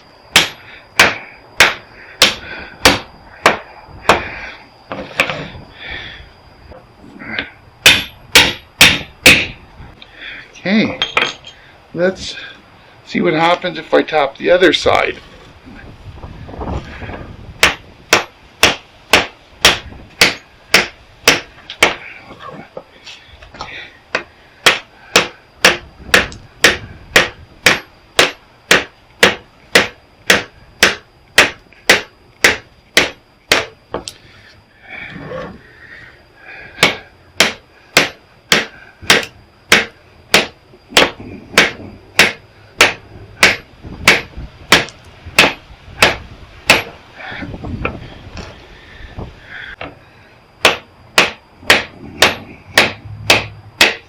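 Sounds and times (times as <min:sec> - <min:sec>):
hammer blows on copper: 0:07.8 - 0:09.6, 0:36.7 - 0:47.0, 0:50.6 - 0:54.0.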